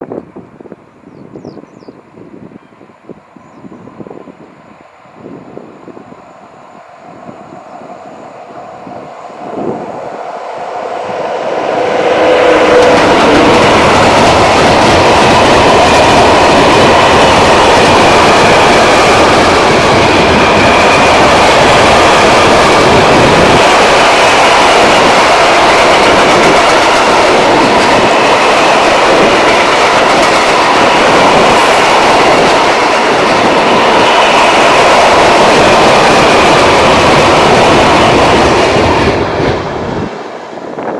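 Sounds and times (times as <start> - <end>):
freight train passing: 0.0 - 40.9
wheels running on rails: 8.7 - 39.7.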